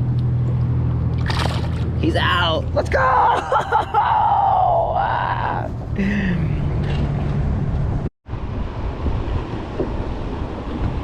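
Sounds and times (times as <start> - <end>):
wind rumbling on microphone: 4.5 - 11.0.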